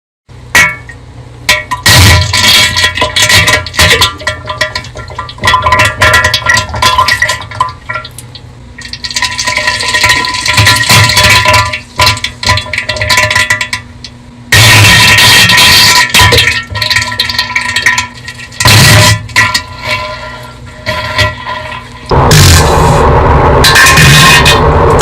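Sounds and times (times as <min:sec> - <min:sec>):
wet sputtering farts: 0:18.6 - 0:25.0.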